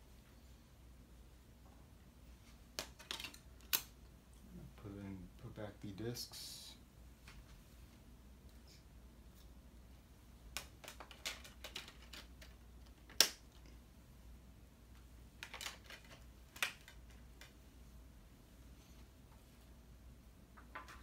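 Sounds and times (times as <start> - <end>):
sharp plastic snaps: 2.7 - 4.0, 10.5 - 13.7.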